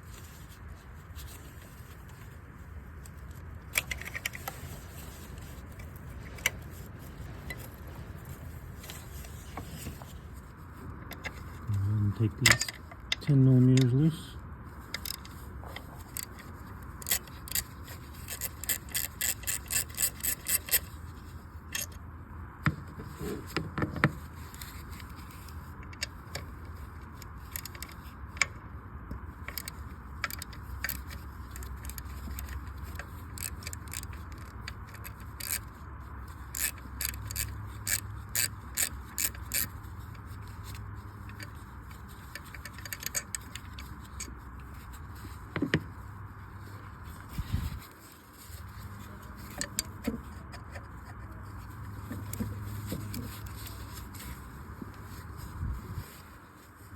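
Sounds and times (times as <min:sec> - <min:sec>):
ratchet wrench clicking: 0:15.0 - 0:15.4, 0:16.0 - 0:20.9, 0:29.5 - 0:44.2
tool scraping against metal: 0:15.0 - 0:20.9.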